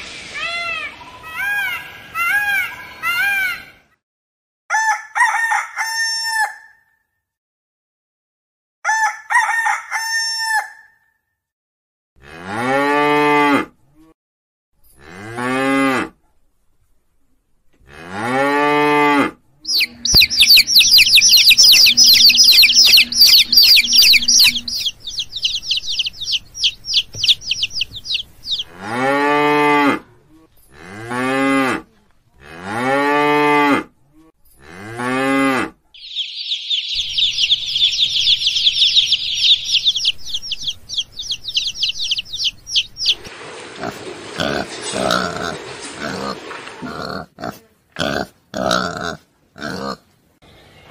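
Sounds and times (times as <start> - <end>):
cattle mooing: 12.2 - 13.7, 17.9 - 19.3, 28.6 - 30.1
rapid high-pitched chirring: 19.7 - 28.7.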